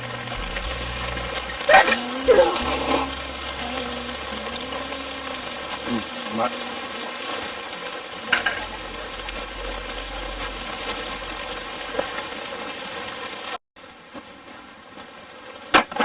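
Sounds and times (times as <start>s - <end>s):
food sizzling in a pan: 0.0s - 16.0s
sharp pops of frying: 8.3s - 8.8s, 15.6s - 16.0s.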